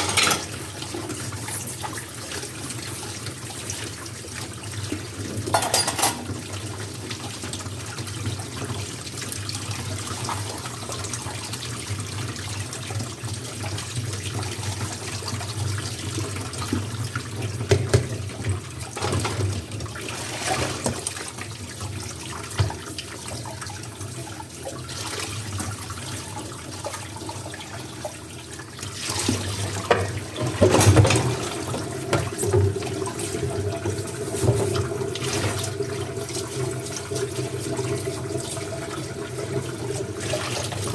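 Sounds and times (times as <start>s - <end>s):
dishes clinking: 0.0s - 0.6s, 5.5s - 6.4s
tap water running into sink: 0.0s - 40.9s.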